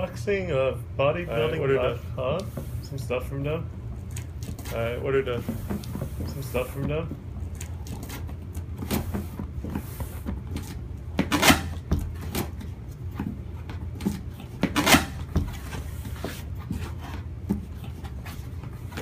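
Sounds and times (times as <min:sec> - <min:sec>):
low steady hum: 0:00.0 - 0:19.0
cardboard scraping or tearing: 0:14.6 - 0:17.1.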